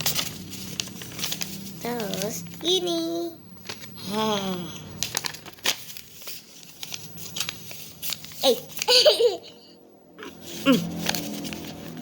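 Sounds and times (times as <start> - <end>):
paper crinkling and folding: 0.0 - 3.0, 3.6 - 9.4, 10.3 - 12.0
child laughing: 8.5 - 9.8.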